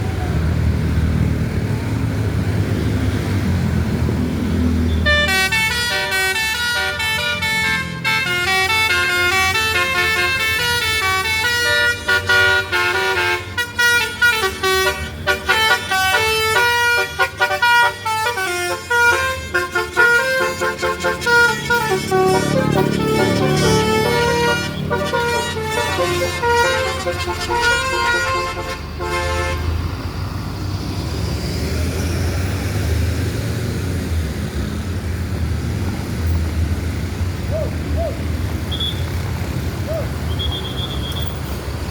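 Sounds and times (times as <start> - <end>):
bus engine running: 0.0 - 41.9
multi-note air horn melody: 5.0 - 29.8.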